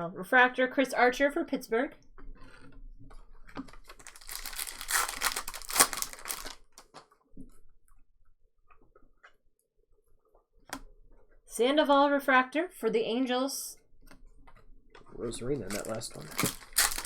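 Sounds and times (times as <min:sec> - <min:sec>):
wrapper being torn and crinkled: 0:03.7 - 0:07.1, 0:15.6 - 0:17.0.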